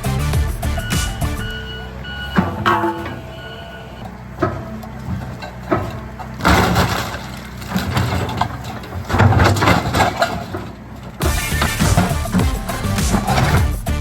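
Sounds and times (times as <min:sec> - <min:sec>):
construction machine engine running: 0:00.0 - 0:14.0
metal pole crashing: 0:02.4 - 0:03.4, 0:04.4 - 0:13.8
sharp knocks: 0:11.2 - 0:13.8.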